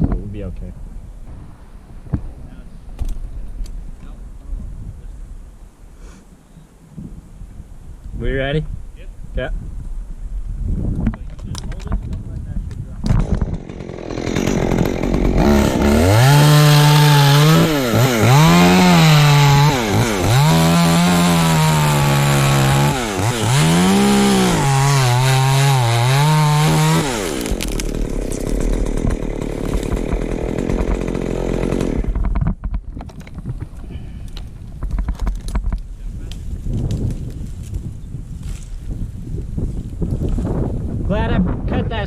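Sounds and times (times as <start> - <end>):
chainsaw cutting wood: 13.1 - 33.4.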